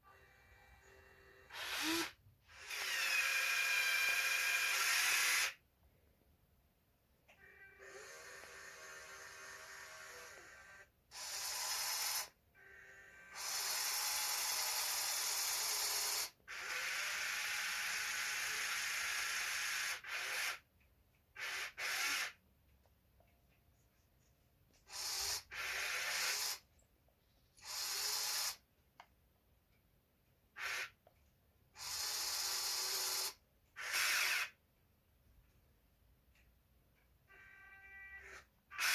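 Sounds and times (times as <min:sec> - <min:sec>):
small motors whirring: 0:00.1 - 0:05.6, 0:07.8 - 0:20.7, 0:24.8 - 0:26.6, 0:27.5 - 0:28.6, 0:31.8 - 0:34.6.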